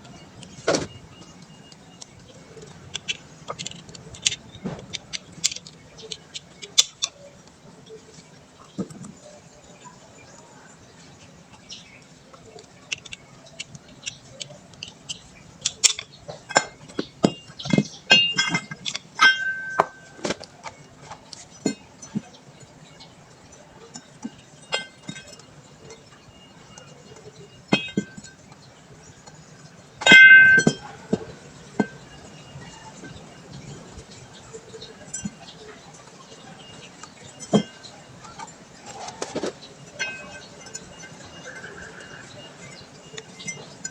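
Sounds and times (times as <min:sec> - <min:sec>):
metal tools clinking and clattering: 0:02.5 - 0:07.2, 0:12.6 - 0:22.3, 0:23.9 - 0:43.9.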